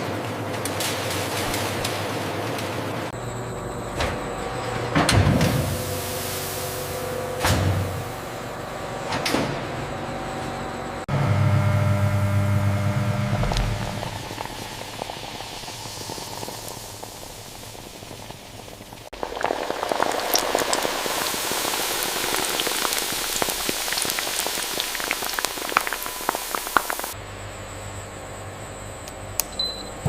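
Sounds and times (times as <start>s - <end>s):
low hum: 0.7s - 29.2s
sharp crackles and pops: 13.2s - 27.2s
fizzing bubbling noise: 13.7s - 27.2s.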